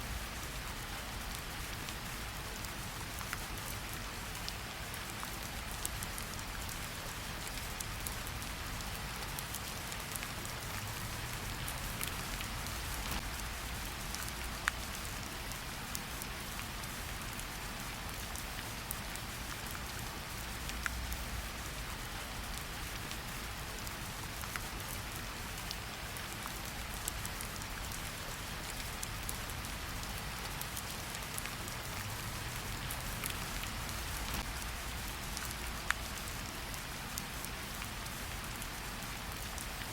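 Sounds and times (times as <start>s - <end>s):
steady rain: 0.0s - 39.9s
wood fire crackling: 7.8s - 15.0s, 30.4s - 36.4s.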